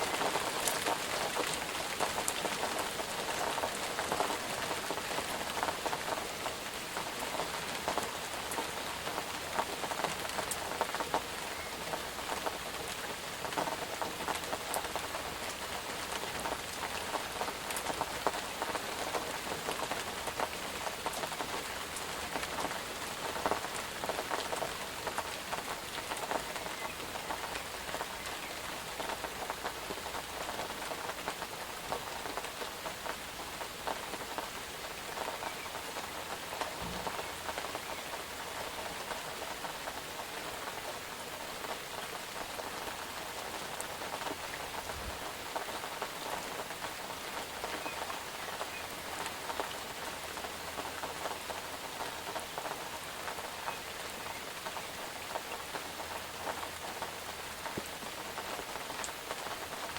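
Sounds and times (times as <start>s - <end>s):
raindrops pattering on surface: 0.0s - 59.9s.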